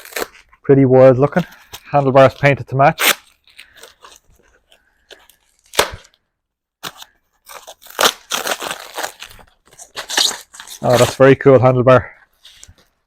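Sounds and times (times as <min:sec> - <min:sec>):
plastic wrap crinkling and tearing: 0:00.0 - 0:00.6, 0:01.4 - 0:06.2, 0:06.8 - 0:11.4.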